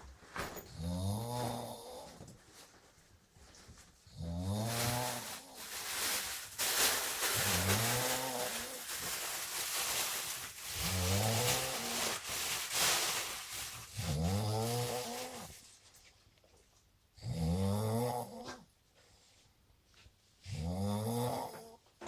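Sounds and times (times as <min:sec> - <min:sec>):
person snoring: 0:00.8 - 0:02.2, 0:04.2 - 0:05.5, 0:14.0 - 0:15.5, 0:17.2 - 0:18.5, 0:20.5 - 0:21.8.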